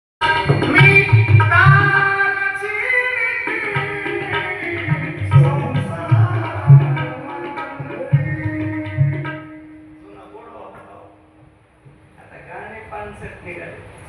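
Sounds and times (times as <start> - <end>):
sustained melody: 3.7 - 11.7.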